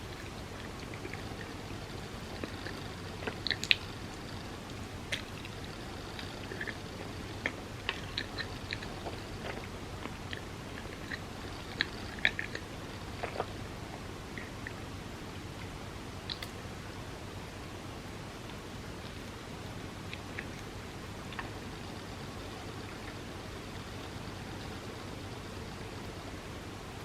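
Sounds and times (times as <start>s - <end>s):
wet mouth chewing clicks: 0.0s - 13.7s, 14.3s - 14.8s, 16.2s - 16.6s, 21.3s - 21.6s
faint steady hiss: 0.0s - 27.0s.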